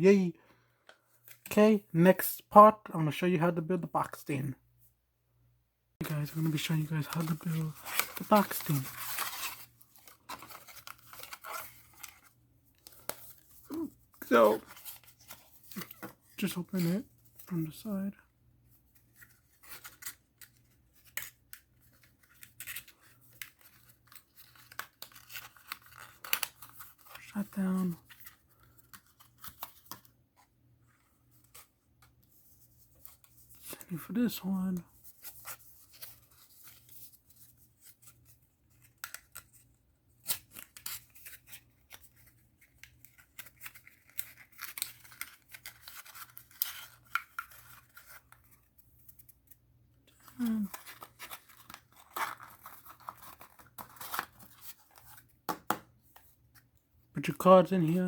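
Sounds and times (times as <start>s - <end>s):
cardboard box being folded: 7.1s - 16.4s, 40.2s - 55.3s.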